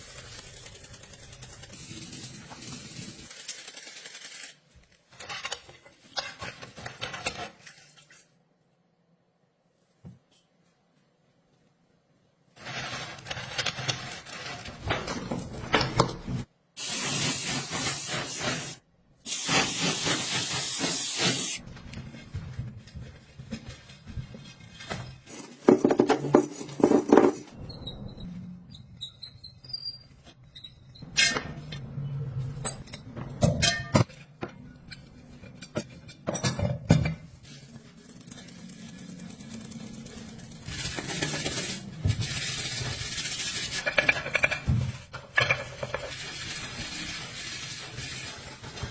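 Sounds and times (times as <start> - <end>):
spray hissing: 16.8 - 21.6.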